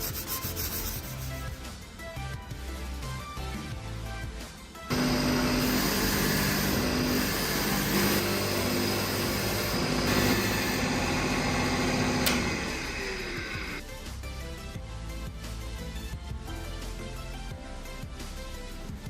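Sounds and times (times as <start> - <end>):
power tool motor running: 4.9 - 13.8
sharp click: 12.2 - 12.6.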